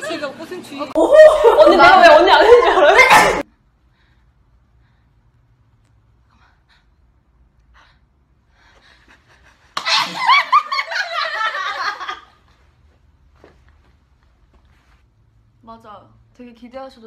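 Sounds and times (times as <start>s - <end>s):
woman sneezing: 3.0s - 3.4s.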